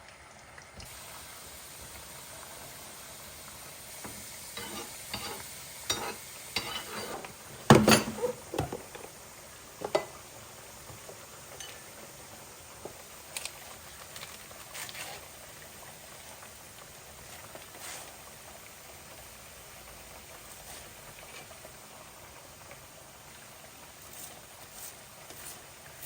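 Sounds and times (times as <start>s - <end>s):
utensils clinking on dishes: 4.6s - 9.1s, 9.8s - 10.2s, 11.5s - 11.9s.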